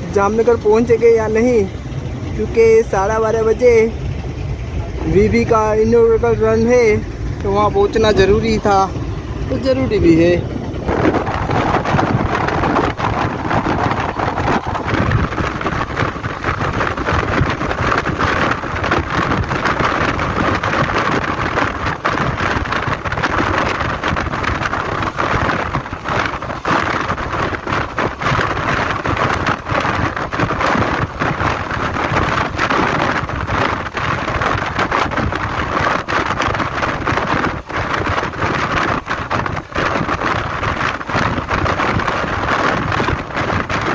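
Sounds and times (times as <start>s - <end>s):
train rushing wind and rolling: 0.0s - 43.9s
wheel-on-rail knocks and clatter: 7.4s - 43.9s.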